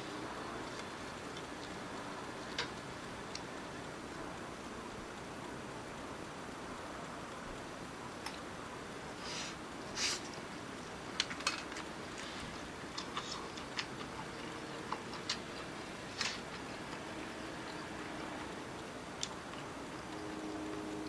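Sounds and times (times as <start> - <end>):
faint steady hiss: 0.0 - 21.0
wood fire crackling: 7.3 - 20.8
hissy puffs: 9.2 - 10.4.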